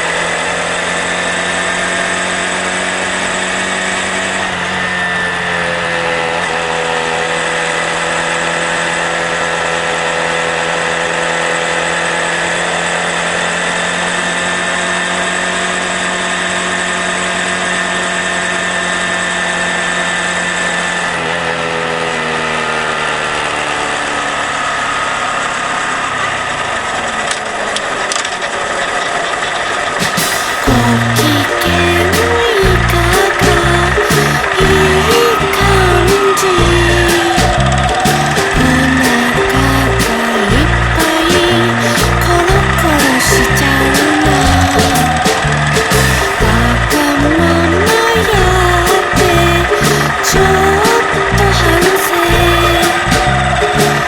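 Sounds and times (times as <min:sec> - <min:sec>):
motorcycle engine running: 0:00.0 - 0:26.0, 0:29.6 - 0:54.0.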